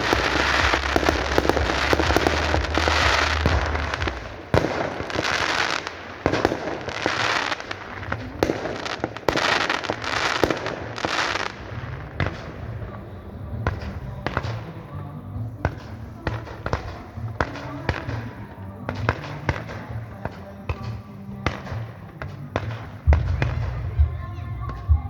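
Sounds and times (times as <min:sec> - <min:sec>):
dense rushing noise: 0:00.0 - 0:05.1
firework shells bursting: 0:00.0 - 0:24.9.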